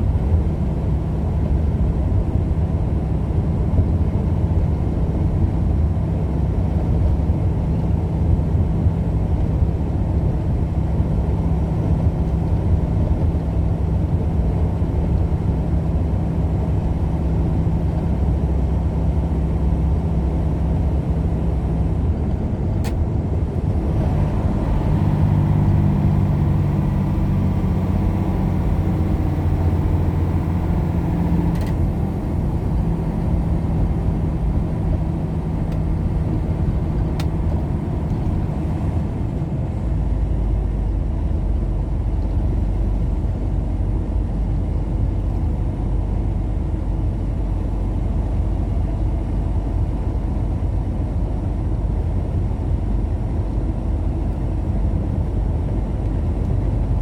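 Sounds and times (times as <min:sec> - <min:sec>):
vehicle engine hum and road noise: 0:00.0 - 0:57.0.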